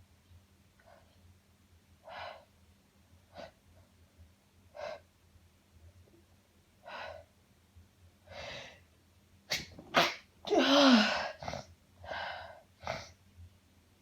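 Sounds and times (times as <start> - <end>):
woman inhaling: 8.3 - 8.9.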